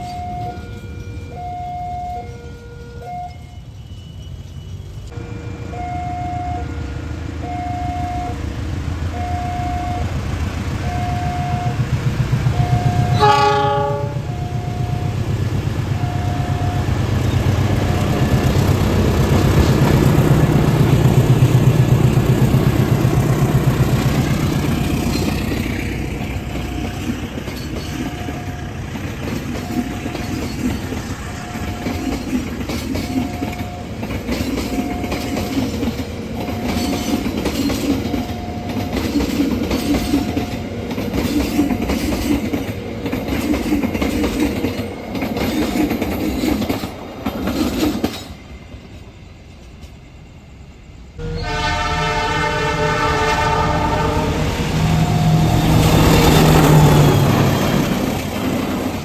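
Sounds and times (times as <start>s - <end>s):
train passing rumble: 0.0s - 59.0s
wagons clattering over rail joints: 17.1s - 48.4s
short beeps: 54.8s - 56.2s.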